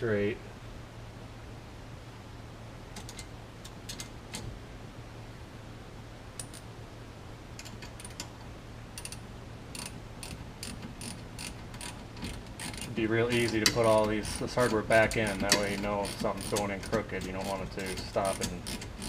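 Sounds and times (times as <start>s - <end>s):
ratchet clicking: 6.4s - 6.7s, 9.0s - 19.0s.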